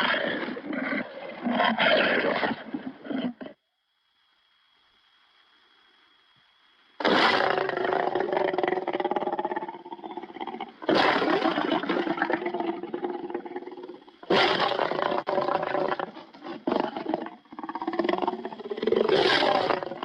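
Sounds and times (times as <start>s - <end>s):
lion roaring: 7.0s - 20.0s.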